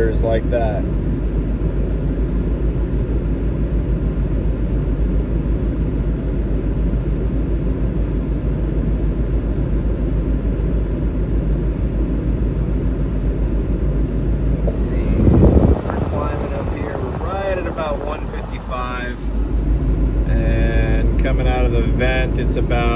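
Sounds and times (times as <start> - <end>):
heater blowing: 14.5 - 21.0
car engine idling: 14.6 - 19.5.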